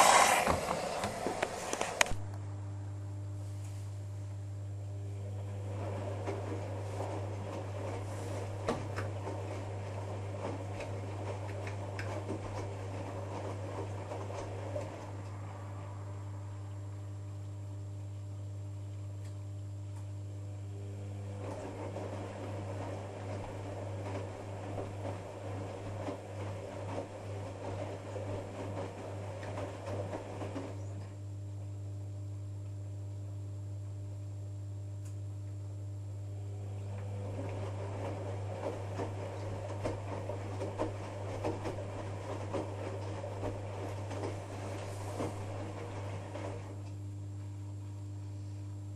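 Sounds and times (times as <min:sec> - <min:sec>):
steady low hum: 0:00.0 - 0:48.9
washing machine motor whirring: 0:00.0 - 0:48.9
washing machine drum tumbling: 0:05.4 - 0:15.5, 0:21.2 - 0:30.9, 0:36.8 - 0:46.9.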